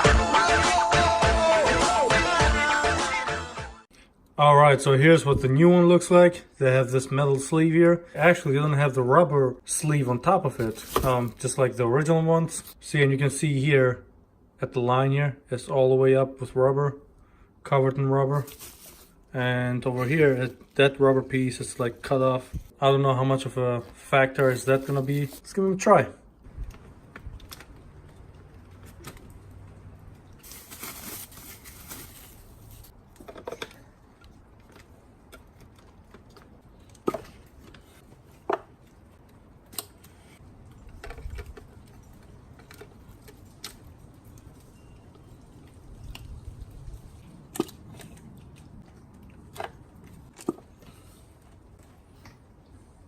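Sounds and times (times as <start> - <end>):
parts and tools being handled: 10.5 - 11.4, 18.4 - 19.2, 26.5 - 46.4.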